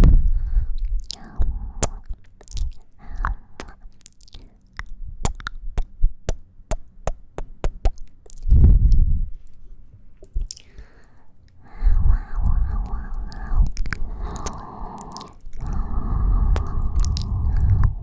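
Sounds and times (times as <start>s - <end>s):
breath against microphone: 10.6s - 18.0s.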